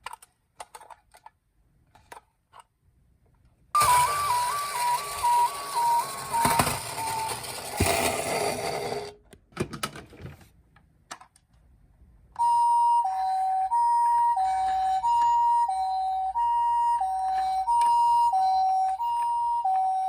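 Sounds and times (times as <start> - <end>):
two-tone ambulance siren: 3.8 - 7.6, 12.4 - 20.0
noisy clatter: 3.8 - 9.2.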